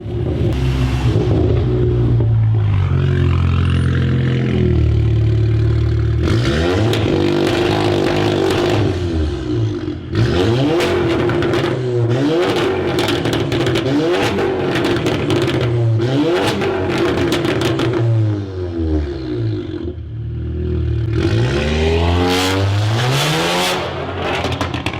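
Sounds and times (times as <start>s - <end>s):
car exhaust revving: 0.0s - 24.9s
exhaust crackles and pops: 12.5s - 15.8s, 24.1s - 24.9s.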